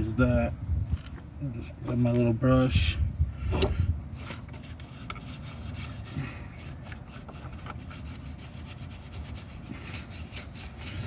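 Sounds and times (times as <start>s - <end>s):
hand brush scrubbing metal: 4.2s - 11.0s.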